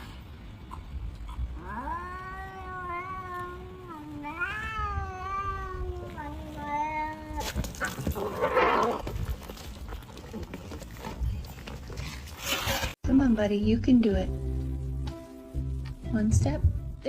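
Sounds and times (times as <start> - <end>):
cat meowing: 1.6 - 7.5.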